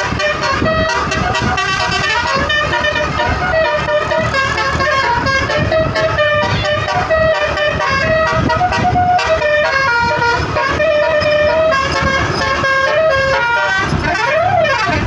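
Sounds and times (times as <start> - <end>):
multi-note bus horn melody: 0.0 - 15.0.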